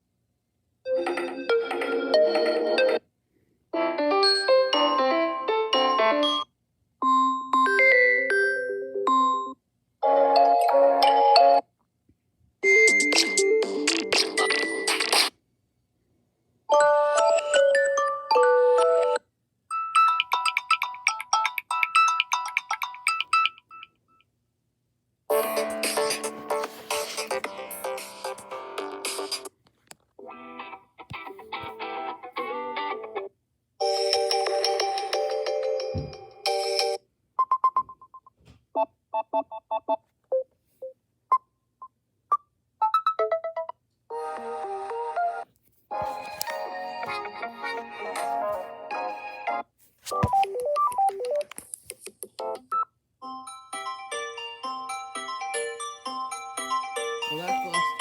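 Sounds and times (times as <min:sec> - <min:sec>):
ringtone tune: 0:00.9 - 0:03.0, 0:03.9 - 0:09.6, 0:16.7 - 0:24.0, 0:25.3 - 0:29.5, 0:33.8 - 0:38.2, 0:42.3 - 0:45.4, 0:52.7 - 0:58.0.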